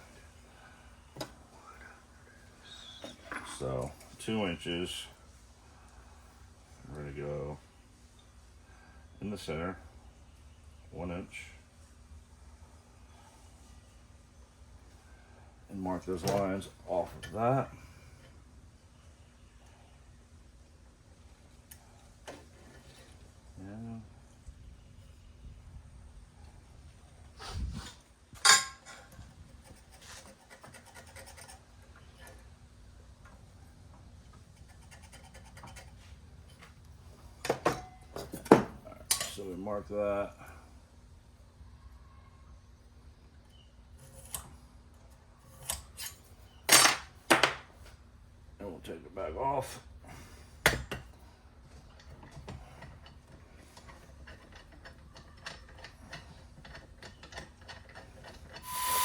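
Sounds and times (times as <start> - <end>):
scribe scratching on steel: 29.5 - 31.7, 34.5 - 36.2, 58.6 - 59.0.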